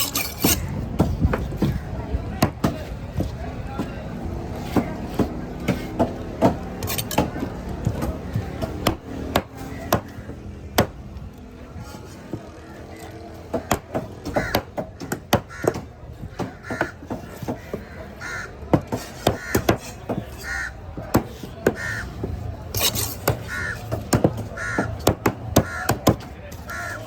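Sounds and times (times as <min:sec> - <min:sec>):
bird harsh calls: 0:24.5 - 0:25.0.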